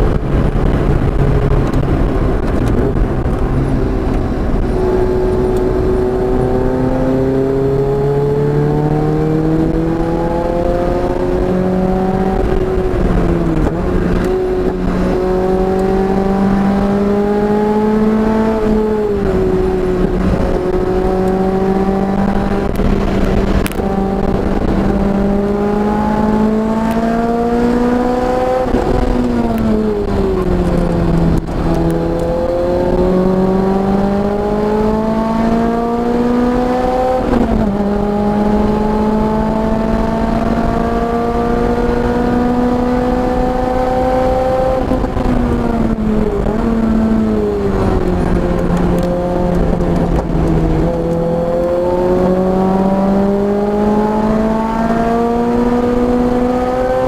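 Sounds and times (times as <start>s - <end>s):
racing car engine accelerating: 0.0s - 57.0s.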